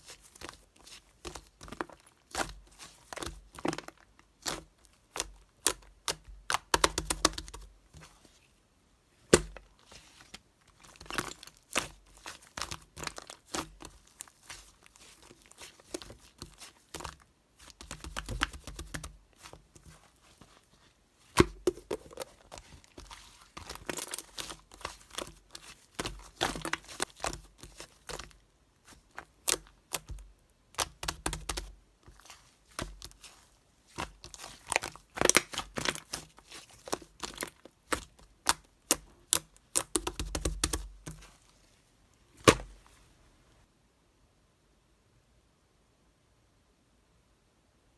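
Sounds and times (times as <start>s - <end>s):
slime crackling and popping: 21.3s - 28.3s, 29.1s - 41.3s.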